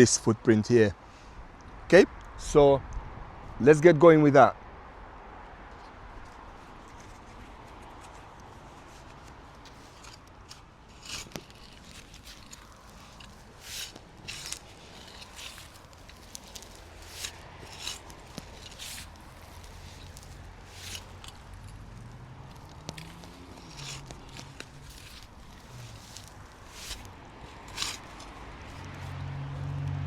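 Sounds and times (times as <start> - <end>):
spade scraping into soil: 9.0 - 21.8, 22.5 - 29.1.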